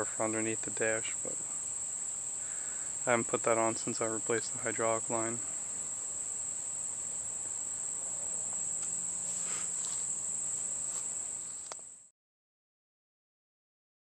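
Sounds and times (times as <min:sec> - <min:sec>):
crickets chirring: 0:00.0 - 0:12.1.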